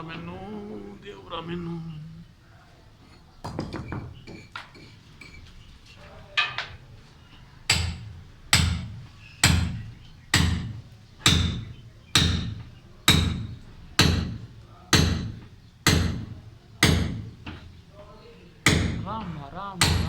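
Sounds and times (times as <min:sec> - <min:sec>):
hammer striking steel chisel: 0:07.7 - 0:17.7, 0:18.6 - 0:19.2, 0:19.8 - 0:20.0.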